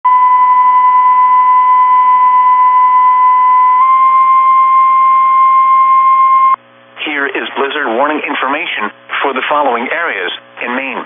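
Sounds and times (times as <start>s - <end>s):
steady high alarm tone: 0.1s - 6.6s.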